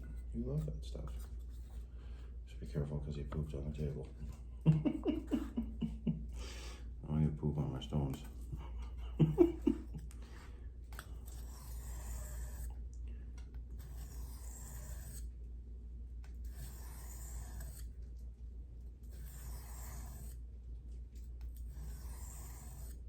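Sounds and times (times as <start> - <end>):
knife scraping on sharpening stone: 10.9 - 12.7, 13.8 - 15.3, 16.5 - 17.9, 19.1 - 20.4, 21.6 - 23.0.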